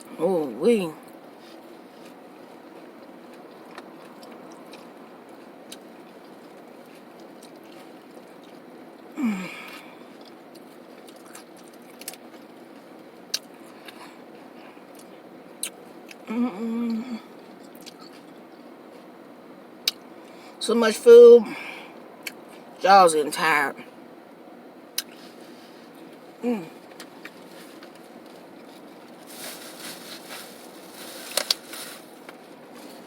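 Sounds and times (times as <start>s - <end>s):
car air conditioning hum: 0.0s - 33.0s
chewing crunchy chips: 1.0s - 16.3s, 16.9s - 19.0s, 24.9s - 33.0s
person humming mm-mm: 9.2s - 9.8s, 16.2s - 17.3s, 26.4s - 26.8s
short vocal sound: 26.4s - 26.8s.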